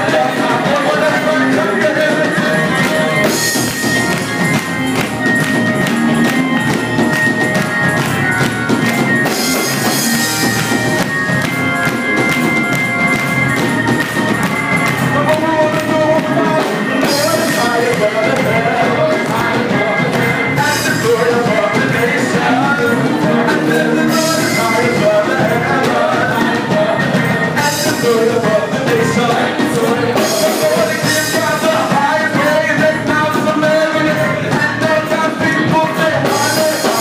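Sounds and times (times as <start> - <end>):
gospel choir singing: 0.0 - 4.3, 14.9 - 37.0
live band with drums: 0.0 - 37.0.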